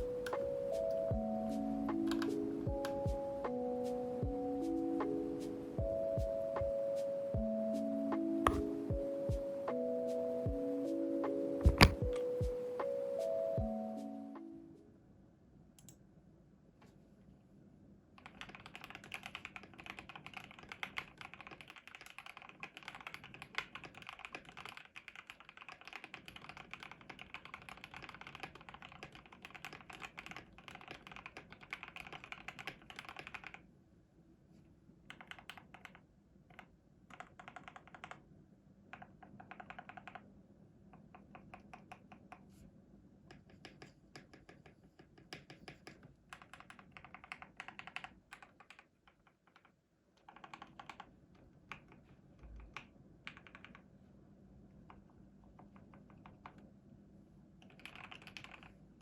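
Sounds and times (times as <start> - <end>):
mechanical keyboard typing: 2.0 - 3.0, 8.4 - 8.7, 11.6 - 12.3, 18.2 - 33.6, 35.1 - 38.2, 38.9 - 40.3, 41.0 - 42.4, 43.3 - 53.8, 54.9 - 56.6, 57.6 - 58.8.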